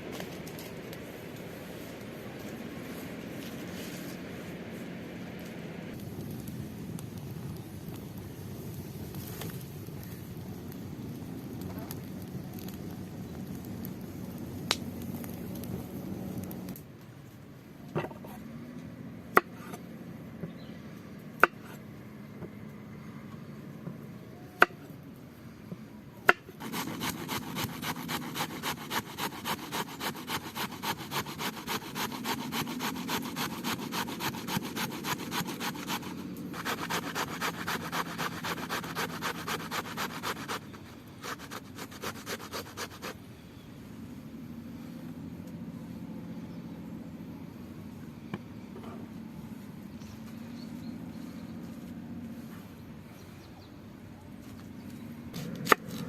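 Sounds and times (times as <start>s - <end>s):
knife chopping on wooden board: 26.6s - 36.0s.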